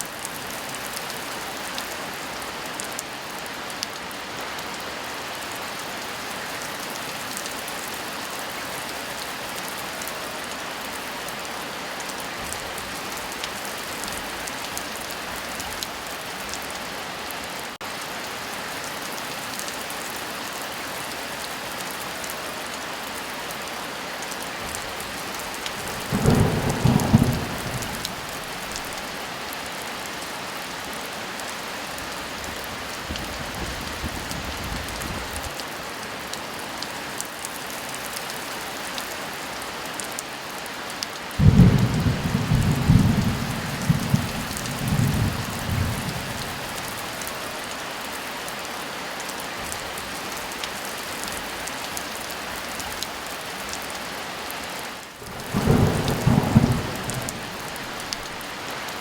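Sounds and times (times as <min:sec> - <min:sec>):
heavy rain: 0:00.0 - 0:59.0
thunder clap rumbling: 0:25.8 - 0:29.0, 0:41.4 - 0:47.1, 0:55.2 - 0:58.4.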